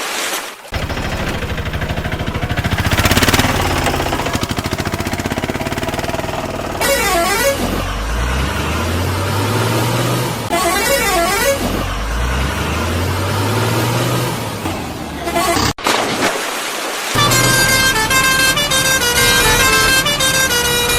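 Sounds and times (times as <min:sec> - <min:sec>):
engine chugging: 0:00.7 - 0:15.7, 0:17.2 - 0:20.9
warbling horn: 0:00.8 - 0:09.7, 0:10.5 - 0:12.5, 0:17.2 - 0:20.9.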